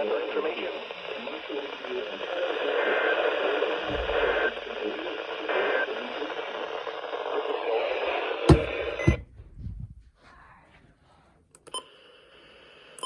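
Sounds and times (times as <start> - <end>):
radio static hiss: 0.0 - 9.2.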